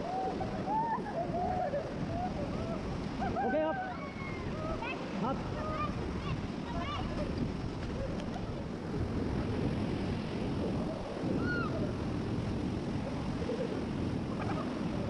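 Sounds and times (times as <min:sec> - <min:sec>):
river rapids roaring: 0:00.0 - 0:07.4
wind buffeting microphone: 0:00.0 - 0:15.0.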